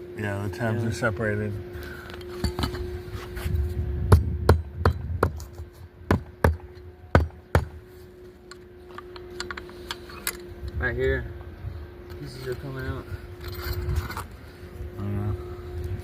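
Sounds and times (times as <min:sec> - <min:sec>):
faint steady hum: 0:00.0 - 0:16.0
hammer striking shingle roof: 0:06.1 - 0:07.8.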